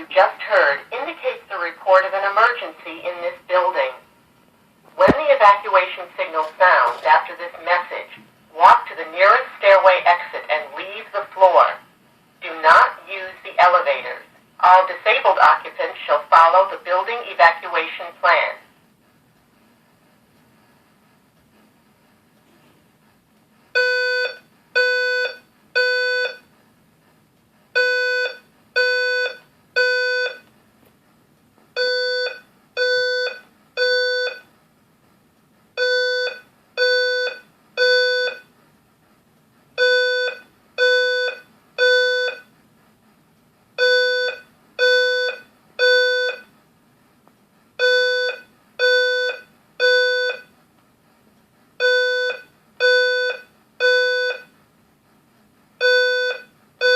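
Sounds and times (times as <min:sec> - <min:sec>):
fire alarm horn beeps: 0:23.8 - 0:26.5, 0:27.8 - 0:30.5, 0:31.8 - 0:34.5, 0:35.8 - 0:38.5, 0:39.8 - 0:42.5, 0:43.8 - 0:46.5, 0:47.8 - 0:50.5, 0:51.8 - 0:54.5, 0:55.8 - 0:56.9.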